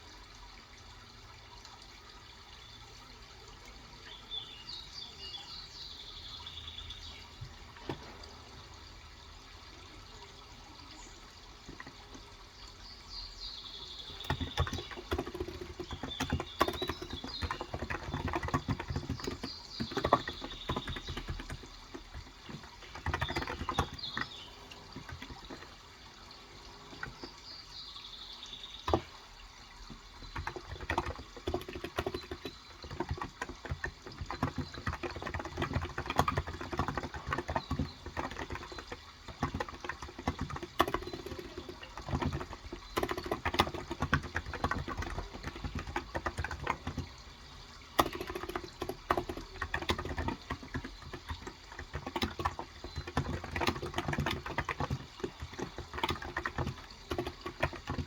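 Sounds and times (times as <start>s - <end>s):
steady water sound: 0.0s - 58.0s
birds chirping: 2.3s - 58.0s
soft keyboard key presses: 29.9s - 47.2s.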